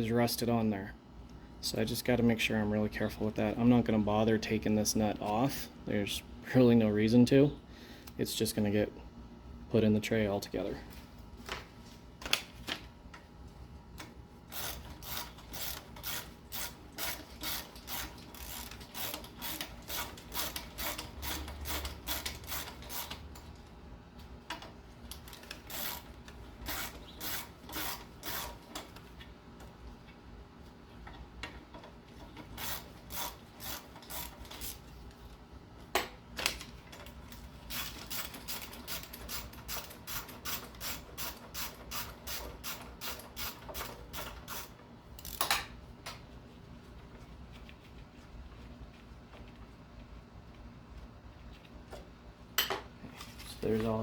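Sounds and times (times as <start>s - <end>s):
ratchet wrench clicking: 14.5s - 23.2s, 25.1s - 28.6s, 32.6s - 34.8s, 37.7s - 45.5s.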